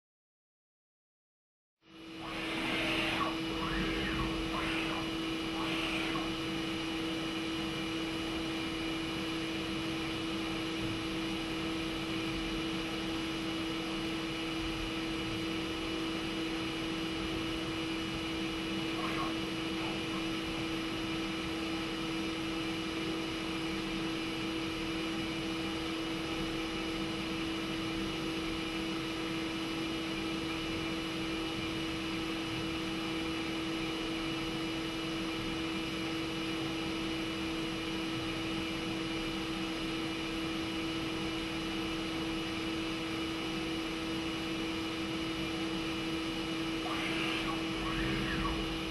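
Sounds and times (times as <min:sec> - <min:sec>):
machine hum: 0:01.9 - 0:13.3, 0:17.2 - 0:22.7, 0:45.4 - 0:48.9.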